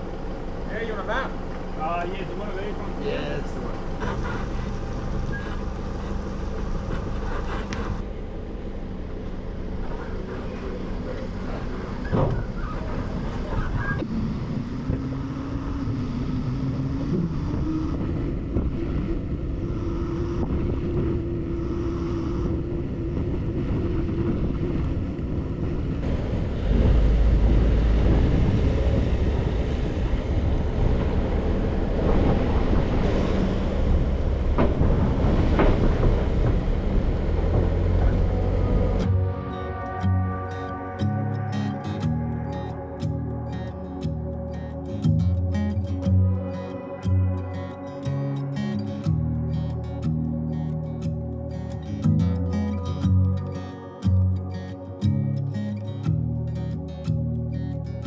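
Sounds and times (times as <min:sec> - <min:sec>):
vehicle engine running: 0:00.0 - 0:18.5, 0:19.2 - 0:55.5
heavy low rumble: 0:00.0 - 0:58.0
wind noise on microphone: 0:11.4 - 0:43.4.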